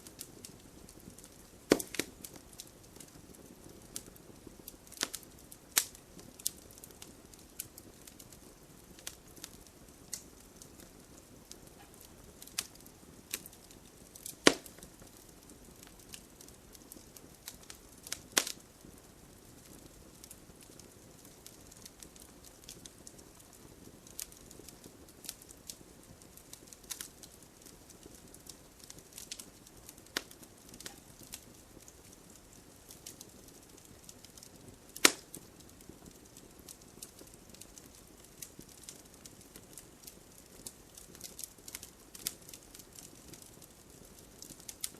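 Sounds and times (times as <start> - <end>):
wood fire crackling: 0.0 - 44.9
sharp loud fire pops: 1.7 - 2.1, 14.4 - 14.8.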